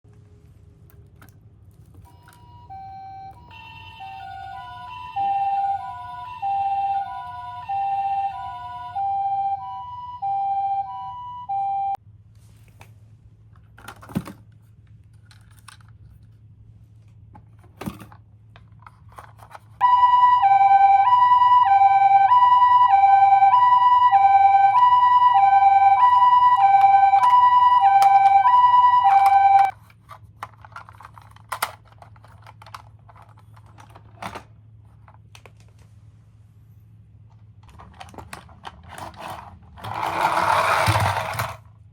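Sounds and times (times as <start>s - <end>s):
toy two-tone siren: 2.1s - 12.0s, 19.8s - 29.7s.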